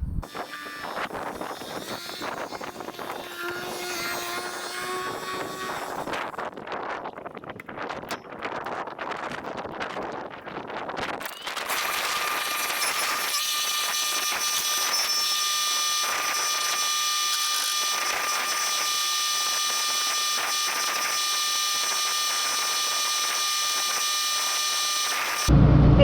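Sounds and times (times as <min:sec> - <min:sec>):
combine harvester whining: 0:25.5 - 0:26.0.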